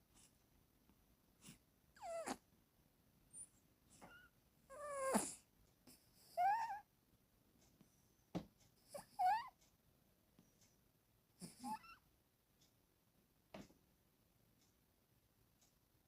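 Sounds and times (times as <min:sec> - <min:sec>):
cat snoring: 0:01.4 - 0:02.4, 0:04.0 - 0:06.8, 0:11.4 - 0:12.0.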